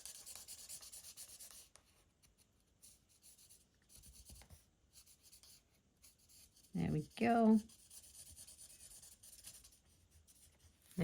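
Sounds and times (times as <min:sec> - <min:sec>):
marker nib scratching on card: 0:07.6 - 0:10.5.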